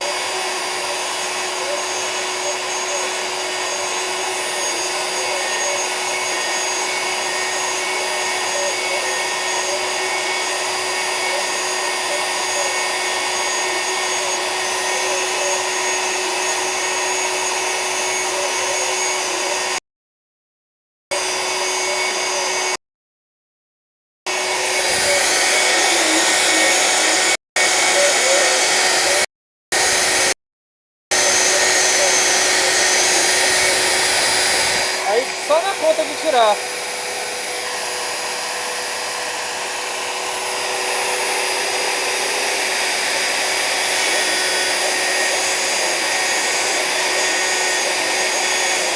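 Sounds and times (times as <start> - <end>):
router spindle whining: 0.0 - 19.8, 21.1 - 22.8, 24.3 - 30.4, 31.1 - 48.9.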